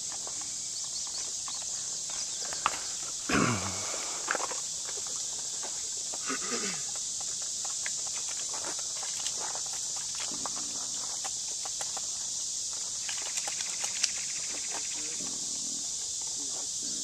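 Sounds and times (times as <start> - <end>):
high-pitched outdoor hiss: 0.0 - 17.0
faint voices: 14.7 - 17.0.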